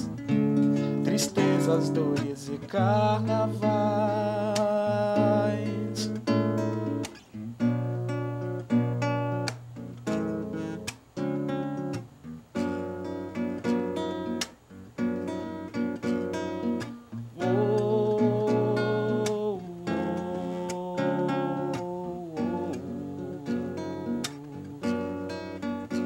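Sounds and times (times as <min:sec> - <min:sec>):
acoustic guitar strumming: 0:00.0 - 0:26.0
voice holding a long note: 0:17.4 - 0:25.1.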